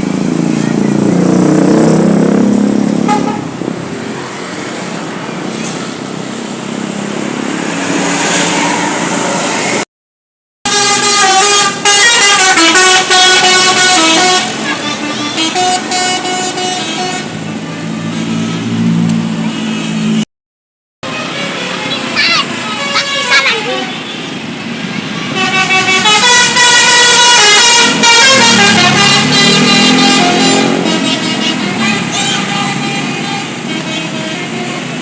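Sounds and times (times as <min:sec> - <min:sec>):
bus musical horn melody: 0:03.0 - 0:03.6, 0:10.7 - 0:18.7, 0:21.0 - 0:24.2, 0:25.2 - 0:35.0.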